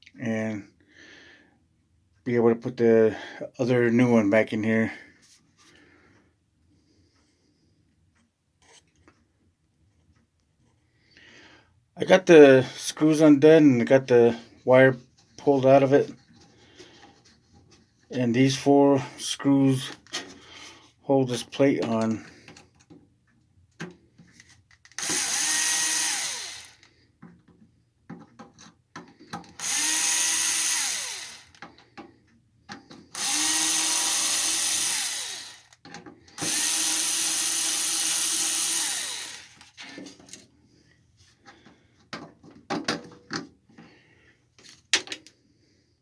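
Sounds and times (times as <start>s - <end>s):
screws and parts clicking: 24.3s - 26.9s, 28.3s - 31.8s, 32.7s - 40.4s
cordless drill whining: 24.6s - 27.0s, 29.3s - 31.9s, 33.0s - 40.4s.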